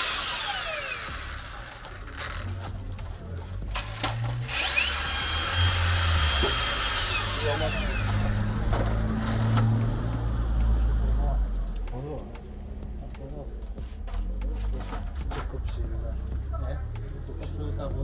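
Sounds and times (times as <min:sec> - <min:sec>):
electric drill spinning: 0:00.0 - 0:09.8.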